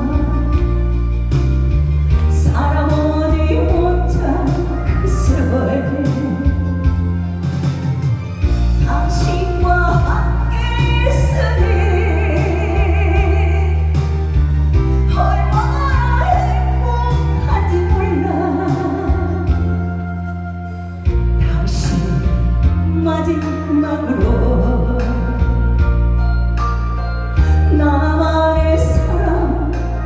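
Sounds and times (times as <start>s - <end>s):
backing track with bass and beat: 0.0s - 11.8s
person singing with vibrato: 2.2s - 7.6s, 8.4s - 25.9s.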